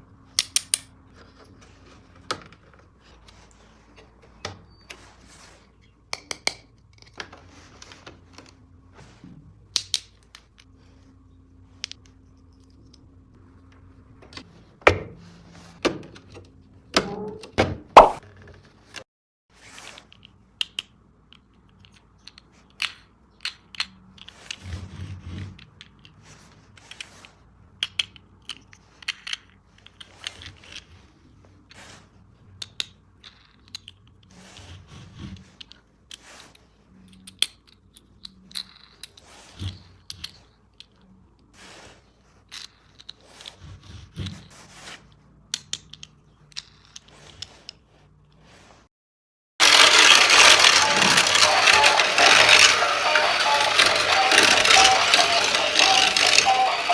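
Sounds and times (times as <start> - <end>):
plastic toy track parts clicking: 27.8 - 30.9, 32.6 - 34.2, 49.6 - 56.9.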